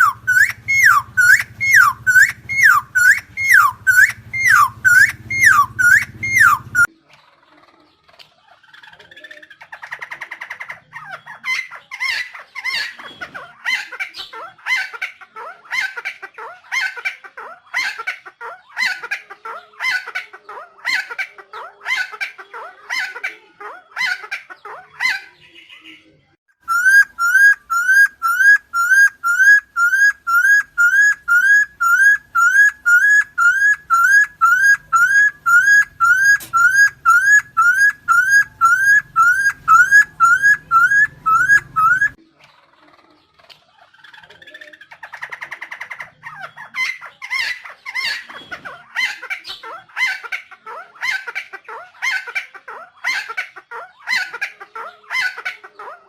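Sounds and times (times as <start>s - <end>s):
bird harsh raspy calls: 0.0s - 6.9s, 26.6s - 42.2s, 43.8s - 56.0s
bird rising whistles: 0.0s - 6.9s, 26.7s - 42.2s.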